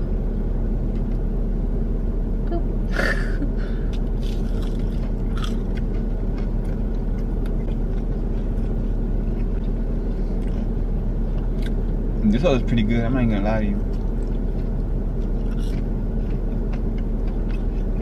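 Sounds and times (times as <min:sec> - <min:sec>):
car engine idling: 0:00.0 - 0:18.0
person chewing: 0:03.9 - 0:11.8, 0:13.9 - 0:18.0.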